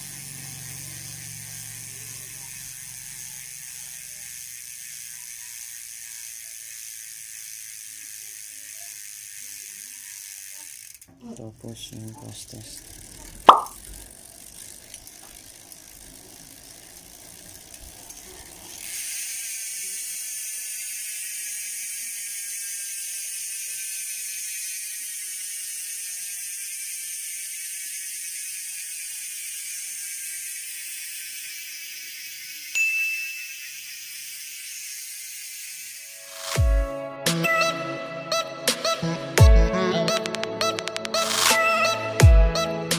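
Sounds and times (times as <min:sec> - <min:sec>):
bicycle hub freewheel buzzing: 0:00.0 - 0:37.8, 0:40.2 - 0:42.9.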